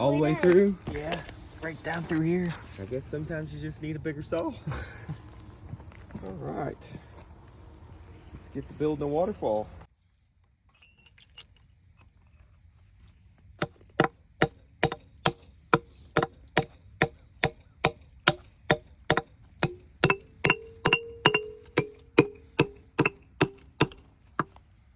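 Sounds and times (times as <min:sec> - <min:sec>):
dry wooden knocks: 0:14.8 - 0:24.6.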